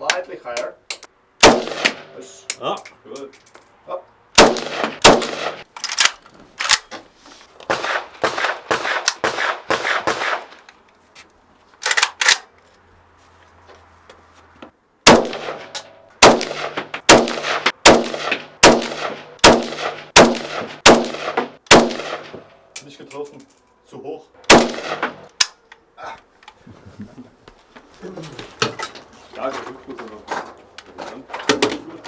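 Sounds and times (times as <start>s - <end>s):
rifle shots: 1.4s - 2.3s, 4.4s - 6.8s, 7.7s - 10.5s, 15.0s - 22.4s, 24.5s - 25.3s.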